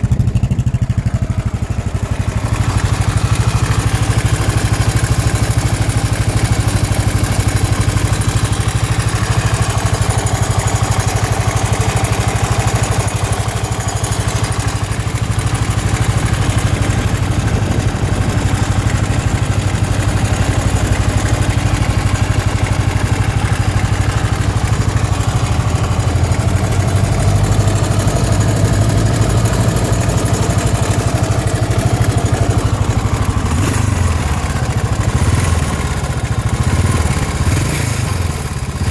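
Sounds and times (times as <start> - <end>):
motorcycle engine idling: 0.0 - 38.9.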